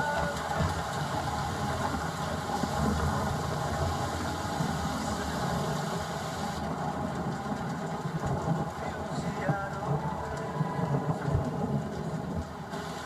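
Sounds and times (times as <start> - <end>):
hiss: 0.0 - 6.8, 12.7 - 13.0.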